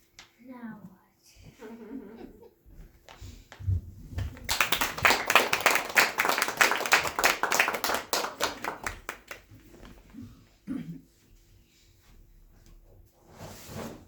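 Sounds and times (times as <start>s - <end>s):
audience applauding: 4.2s - 10.0s.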